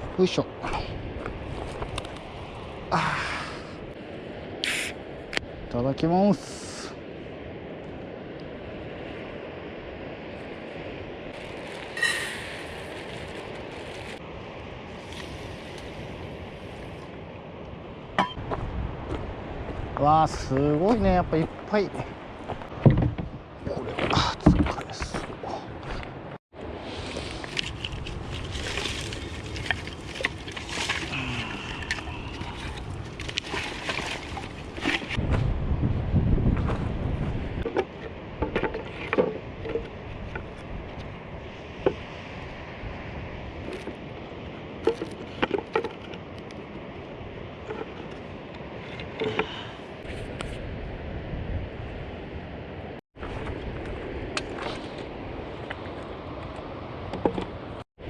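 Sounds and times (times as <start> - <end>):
water noise: 0.0 - 20.6, 24.2 - 35.3
steady rushing outdoor noise: 0.0 - 57.8
wind: 0.0 - 58.0.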